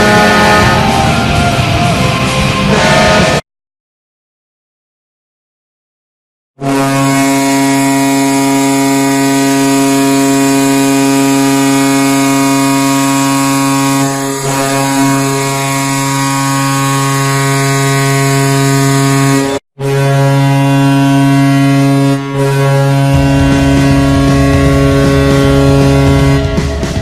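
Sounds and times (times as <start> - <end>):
arena goal horn blast: 0.0 - 3.4, 6.6 - 27.0.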